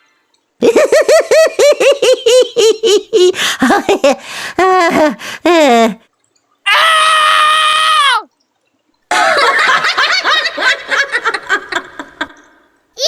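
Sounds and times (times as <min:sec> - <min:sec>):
long high scream: 0:06.7 - 0:08.3.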